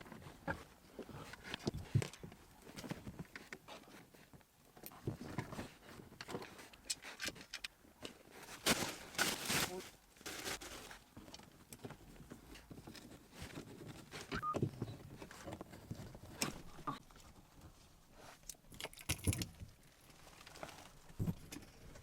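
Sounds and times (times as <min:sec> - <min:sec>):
handling knocks clicks and rustling: 0:18.5 - 0:22.0.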